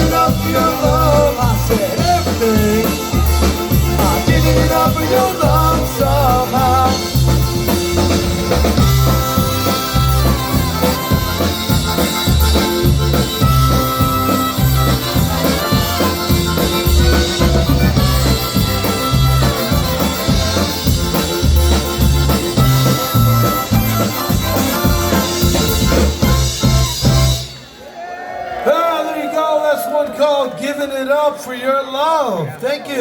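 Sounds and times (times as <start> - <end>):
pulsing bass line: 0.0 - 27.5
polka band playing: 0.0 - 27.9.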